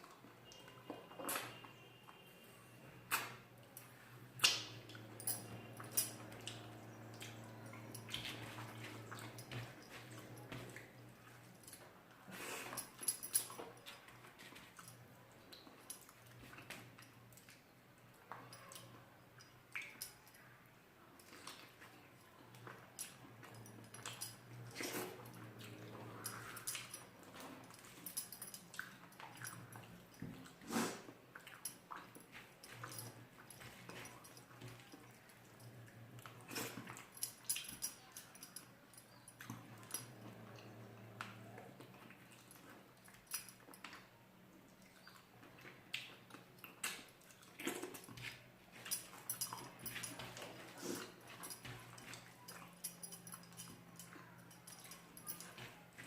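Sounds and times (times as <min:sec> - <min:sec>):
wet eating sounds: 0:21.2 - 0:38.3, 0:39.0 - 0:56.0
person chewing with lip smacks: 0:36.2 - 0:37.7.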